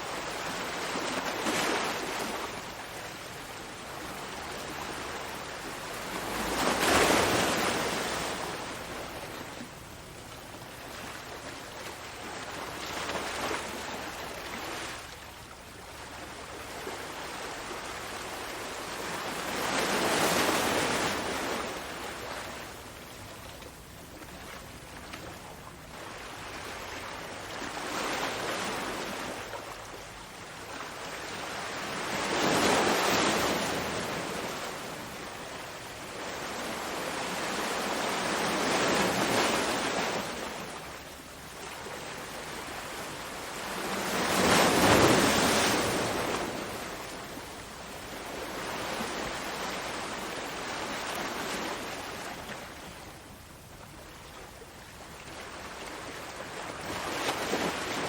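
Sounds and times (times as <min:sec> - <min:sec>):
ocean waves breaking: 0:00.0 - 0:15.5, 0:30.5 - 0:53.3.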